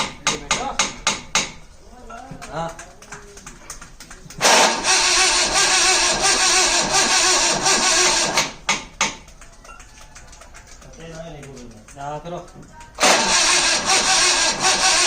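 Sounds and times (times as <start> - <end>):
starter motor cranking: 4.4 - 8.7, 13.0 - 15.0.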